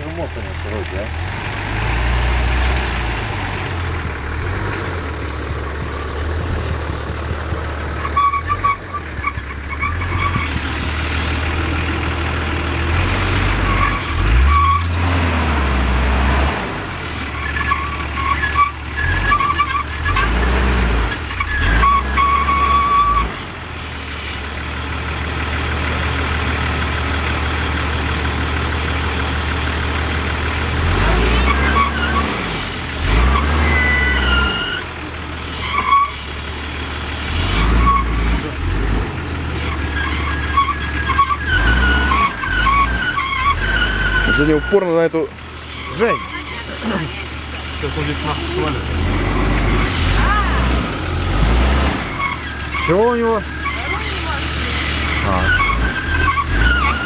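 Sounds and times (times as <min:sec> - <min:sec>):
off-roader engine droning: 0:00.0 - 0:57.0
vehicle creaking squeaks: 0:06.8 - 0:10.9, 0:13.4 - 0:15.2, 0:17.2 - 0:23.4, 0:31.0 - 0:36.5, 0:37.3 - 0:38.6, 0:39.5 - 0:50.8, 0:51.5 - 0:57.0.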